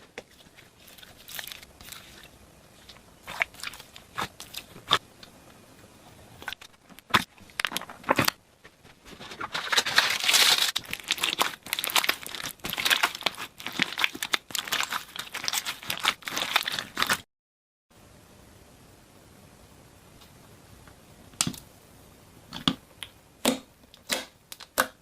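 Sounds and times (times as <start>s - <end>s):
faint room hiss: 0.0s - 16.5s, 17.9s - 25.0s
slime crunching and crackling: 0.3s - 5.0s, 9.6s - 17.2s.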